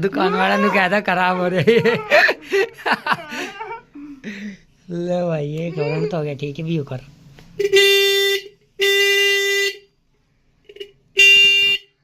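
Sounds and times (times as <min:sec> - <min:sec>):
electric car horn blasts: 0:07.6 - 0:09.9, 0:10.7 - 0:12.0.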